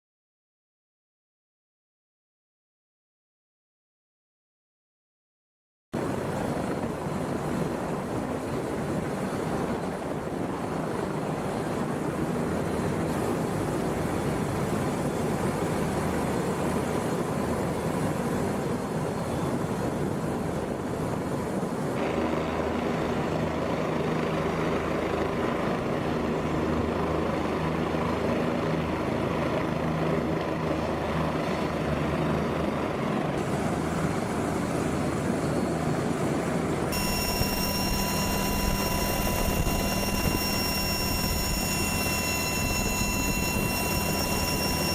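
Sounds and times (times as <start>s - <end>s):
helicopter rotor and engine noise: 6.0s - 44.9s
high whine: 36.9s - 44.9s.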